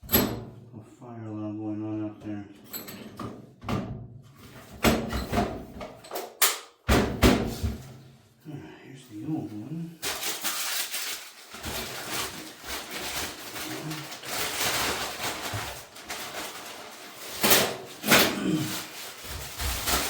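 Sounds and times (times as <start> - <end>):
rustling and scraping: 10.0 - 20.0.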